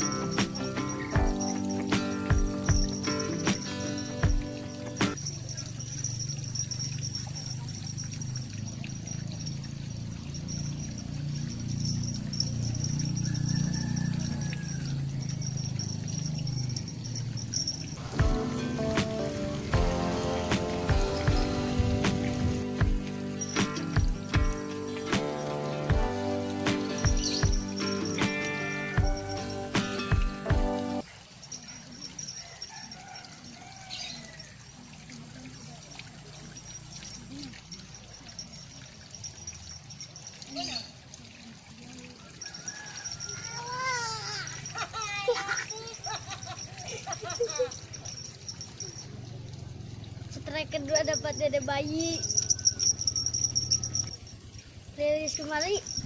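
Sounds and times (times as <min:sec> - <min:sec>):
music: 0:00.0 - 0:05.2, 0:18.0 - 0:31.0
insects chirring in a pulsing trill: 0:00.0 - 0:34.8, 0:36.0 - 0:40.7, 0:42.4 - 0:56.0
water trickling into pond: 0:00.0 - 0:56.0.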